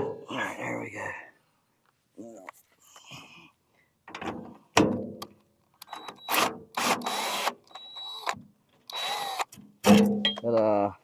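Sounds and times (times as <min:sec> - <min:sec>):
power drill whining: 0:05.9 - 0:09.5.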